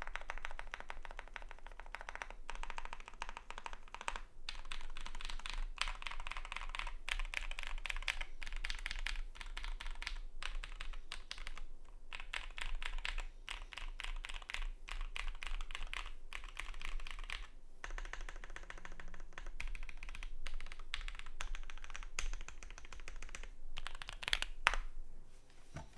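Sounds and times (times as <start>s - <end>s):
mechanical keyboard typing: 0.0s - 24.8s.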